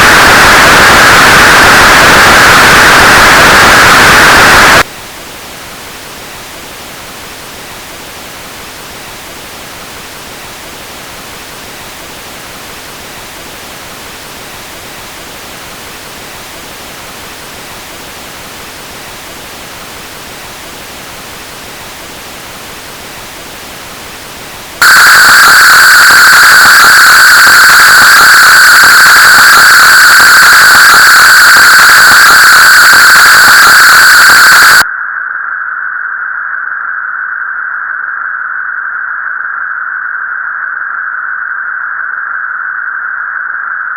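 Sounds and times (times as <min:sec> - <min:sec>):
filtered white noise hiss: 0:00.0 - 0:34.8.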